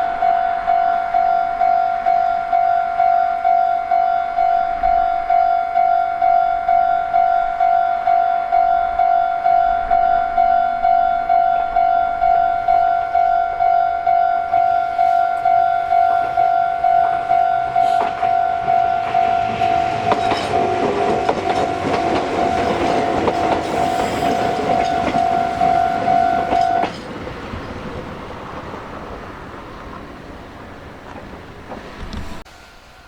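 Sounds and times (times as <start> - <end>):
level crossing warning bell: 0.0 - 27.2
train wheels clattering: 15.0 - 32.4.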